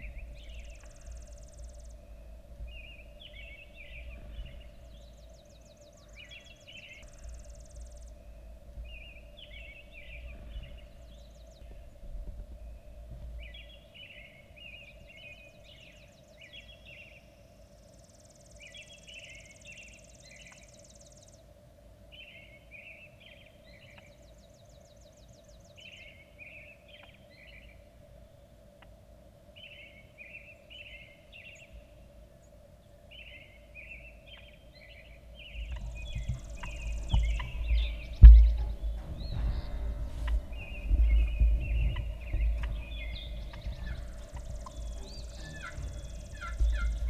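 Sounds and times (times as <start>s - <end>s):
songbirds singing: 0.0s - 21.5s, 29.6s - 47.0s
bird trill: 35.5s - 47.0s
knocks and rustles: 35.6s - 47.0s.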